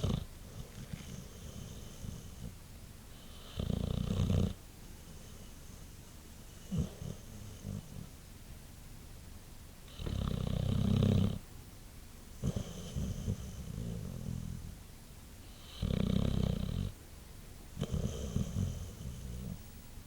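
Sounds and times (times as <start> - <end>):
dog snoring: 0.0 - 8.1, 9.9 - 11.4, 12.4 - 14.8, 15.4 - 17.0, 17.8 - 19.6
dog breathing softly: 0.0 - 8.2, 12.4 - 14.8, 17.8 - 19.6.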